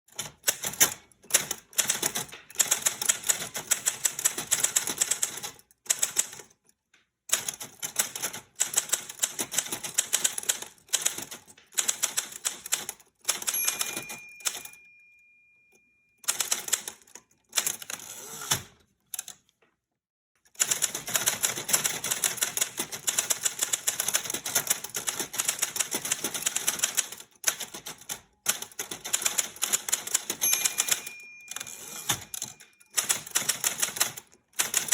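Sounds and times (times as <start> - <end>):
typewriter keys clicking: 0.1 - 6.7, 7.3 - 14.8, 16.3 - 19.5, 20.5 - 34.9
typewriter bell ringing: 13.3 - 17.0, 29.4 - 34.2.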